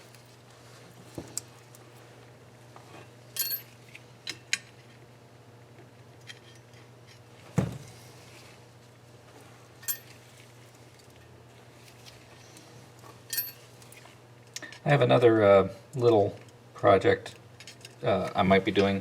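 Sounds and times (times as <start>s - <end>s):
steady low hum: 0.0s - 19.0s
metal tools clinking: 3.4s - 3.7s, 13.3s - 13.6s.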